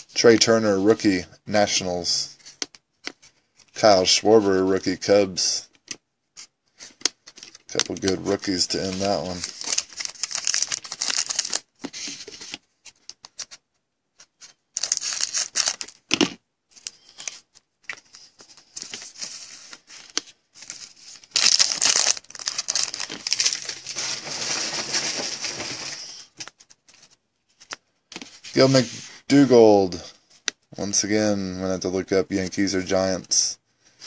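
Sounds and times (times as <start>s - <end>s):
card pack wrapper crinkling: 7.3s - 11.7s, 14.7s - 27.2s.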